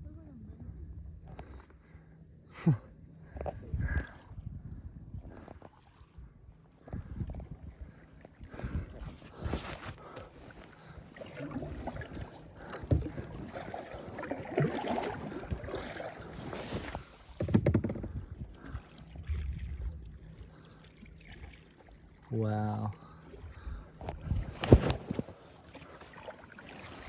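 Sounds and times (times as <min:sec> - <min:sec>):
paddle strokes splashing water: 0:08.0 - 0:22.3, 0:24.3 - 0:27.0
dull knocks: 0:17.3 - 0:18.3.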